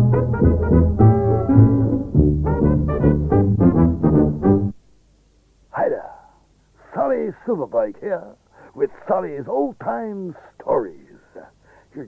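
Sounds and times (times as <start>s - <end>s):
brass-led music from cassette: 0.0s - 4.8s.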